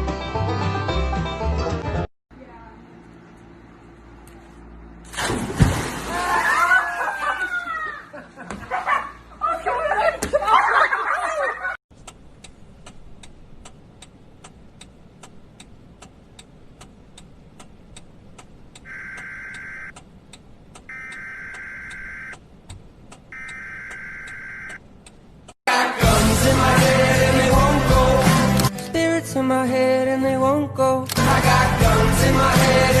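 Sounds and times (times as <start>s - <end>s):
clock ticking: 12.0s - 25.6s
alarm beeping: 18.9s - 19.9s, 20.9s - 22.4s, 23.3s - 24.8s.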